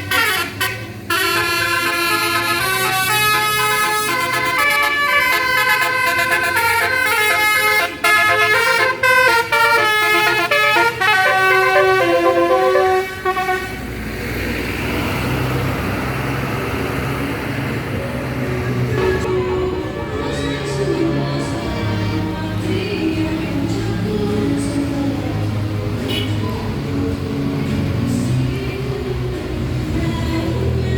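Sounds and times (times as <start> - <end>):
multi-tone air horn melody: 0.0 - 13.9, 26.1 - 26.4
bus engine: 0.0 - 30.9
road noise: 0.0 - 30.9.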